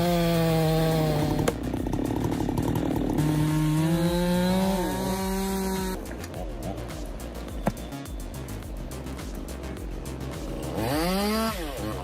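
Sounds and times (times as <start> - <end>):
two-stroke chainsaw running: 0.0 - 6.1, 10.4 - 12.0.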